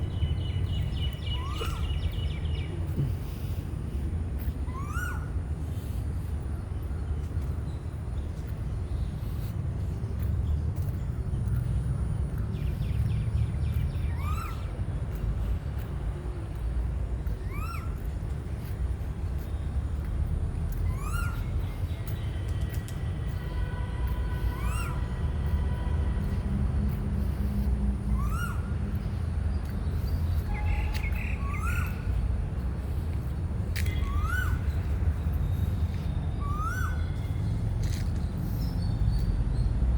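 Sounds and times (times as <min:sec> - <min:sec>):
bird call rising and falling: 0:30.4 - 0:32.2, 0:36.4 - 0:37.2.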